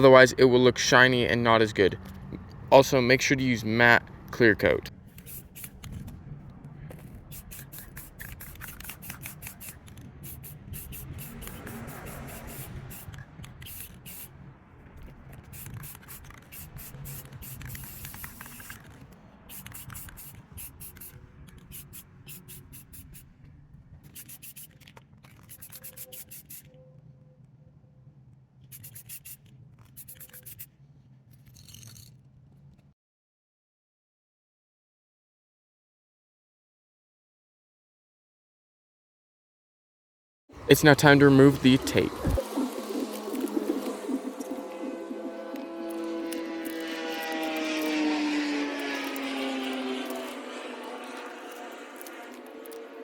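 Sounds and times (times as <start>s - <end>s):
aerosol can spraying: 5.1s - 5.9s, 7.2s - 14.3s, 15.4s - 18.9s, 19.5s - 23.3s, 24.1s - 24.8s, 25.4s - 26.7s, 28.7s - 30.7s.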